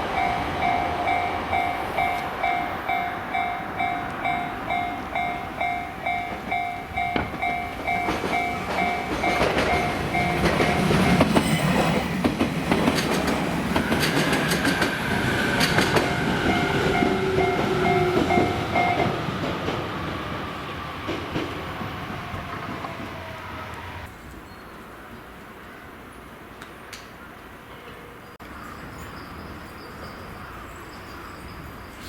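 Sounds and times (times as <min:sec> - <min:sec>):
level-crossing alarm ringing: 0:00.0 - 0:12.1, 0:14.2 - 0:19.2
train wheels clattering over rail joints: 0:05.6 - 0:19.9.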